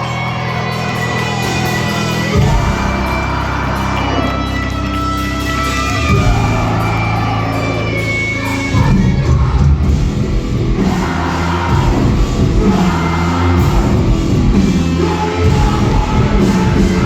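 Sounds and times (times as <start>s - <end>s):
heavy guitars and bass: 0.0s - 17.0s
sung and shouted vocals: 0.0s - 17.0s.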